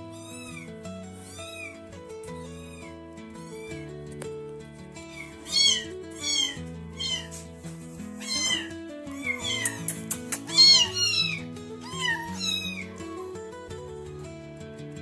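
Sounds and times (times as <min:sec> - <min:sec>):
kittens mewing: 0:00.0 - 0:03.9, 0:05.0 - 0:07.6, 0:08.2 - 0:13.4
background music with held notes: 0:00.0 - 0:15.0.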